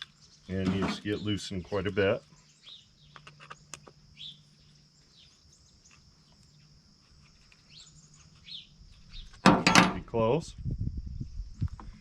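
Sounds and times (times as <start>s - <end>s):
faint bird chirps: 0.0s - 9.4s.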